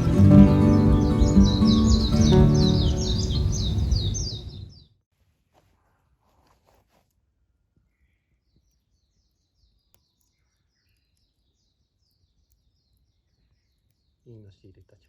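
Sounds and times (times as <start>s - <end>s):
faint birdsong: 0.0s - 5.0s, 7.8s - 15.0s.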